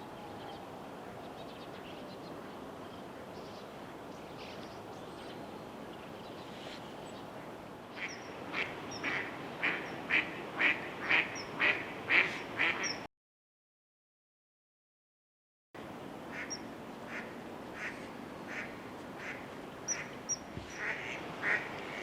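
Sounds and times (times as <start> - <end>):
duck quacking: 8.0 - 13.0, 20.8 - 22.0.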